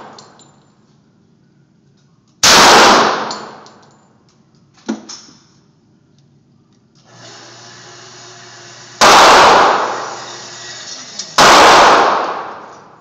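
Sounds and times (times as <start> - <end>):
pistol shots echoing: 2.4 - 3.8, 9.0 - 9.9, 11.4 - 13.0.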